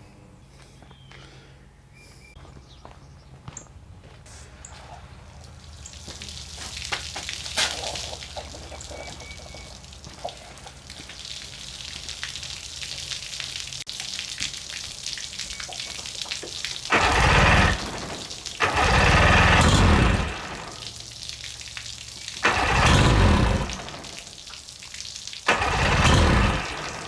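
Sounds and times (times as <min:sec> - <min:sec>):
water hissing from hose: 0:04.3 - 0:27.0
outboard motor starting bursts: 0:16.8 - 0:21.2, 0:22.2 - 0:24.4, 0:25.4 - 0:27.0.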